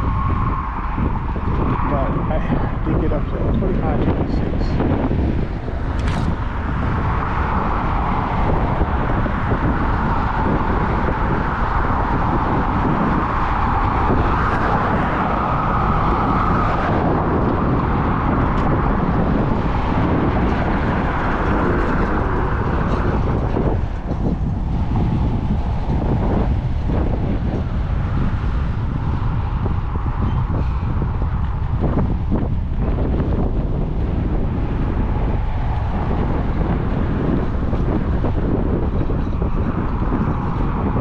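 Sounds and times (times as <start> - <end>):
scooter tyre and motor noise: 0.0 - 41.0
wind buffeting microphone: 0.0 - 41.0.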